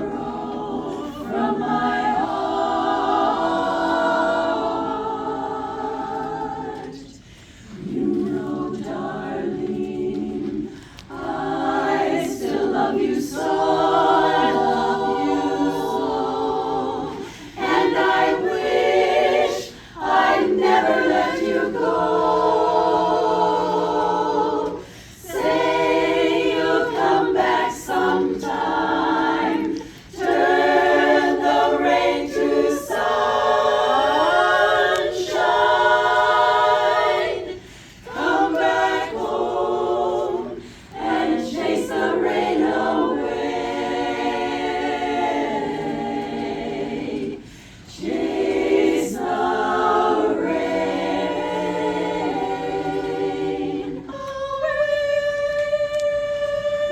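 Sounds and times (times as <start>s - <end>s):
a cappella group singing: 0.0s - 56.9s.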